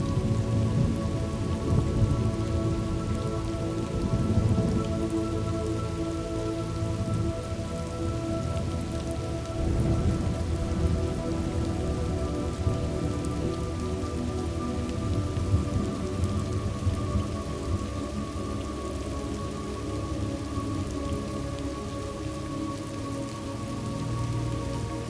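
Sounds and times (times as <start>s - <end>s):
steady rainfall: 0.0s - 25.0s
distant thunder rumbling: 9.6s - 13.3s.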